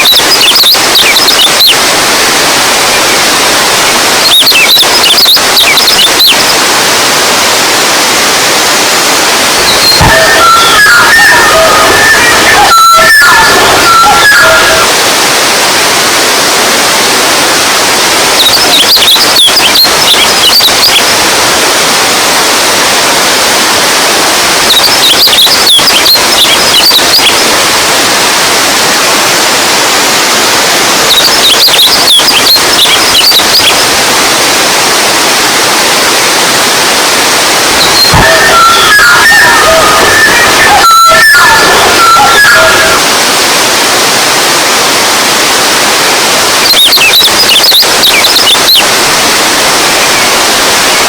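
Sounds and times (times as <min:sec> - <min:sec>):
water rushing: 0:00.0 - 0:51.0
high chirps: 0:09.6 - 0:14.9, 0:37.8 - 0:43.1.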